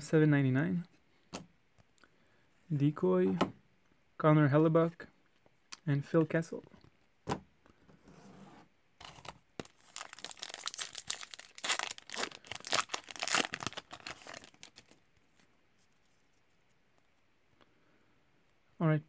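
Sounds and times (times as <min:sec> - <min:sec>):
wrapper tearing and crinkling: 0:09.0 - 0:15.0.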